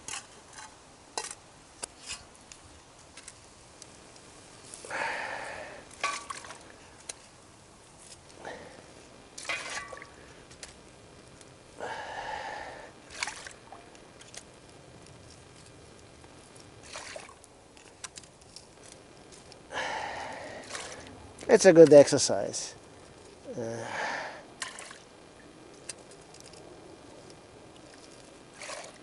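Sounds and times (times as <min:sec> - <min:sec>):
water splashing from shovel: 0:06.0 - 0:06.6, 0:09.4 - 0:10.1, 0:13.1 - 0:13.6, 0:16.8 - 0:17.4, 0:20.6 - 0:21.1, 0:24.6 - 0:25.0, 0:28.6 - 0:29.0.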